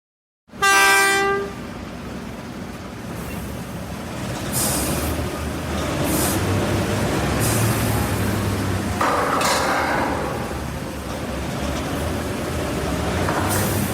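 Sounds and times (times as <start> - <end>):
truck horn blast: 0.5 - 1.7
truck engine running: 1.7 - 13.9.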